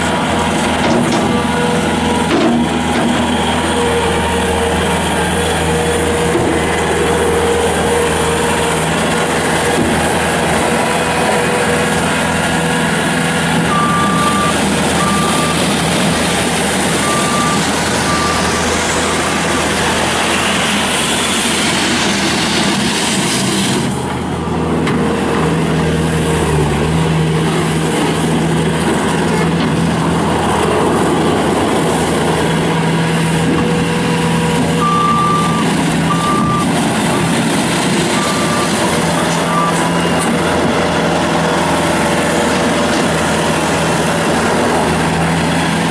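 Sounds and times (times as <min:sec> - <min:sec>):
diesel engine running: 0:00.0 - 0:45.9
reversing alarm beeps: 0:13.7 - 0:15.7, 0:17.0 - 0:19.8, 0:34.8 - 0:36.8, 0:38.1 - 0:40.1.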